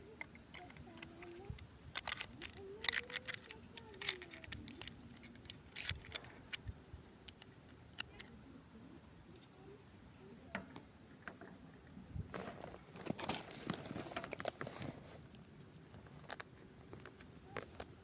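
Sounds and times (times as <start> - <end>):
small toy pieces clicking: 0.2 - 6.3.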